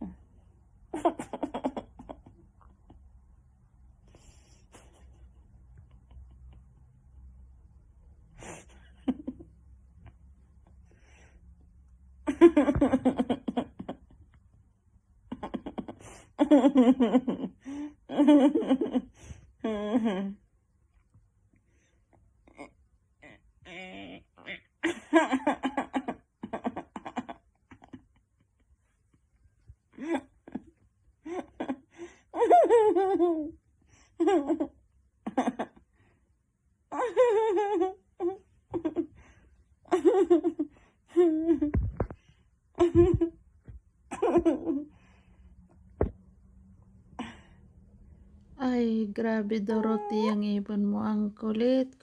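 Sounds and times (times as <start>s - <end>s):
laughter-like vocal sounds: 0.9s - 3.2s, 4.2s - 6.8s, 12.2s - 14.4s, 15.3s - 20.4s, 42.7s - 45.0s.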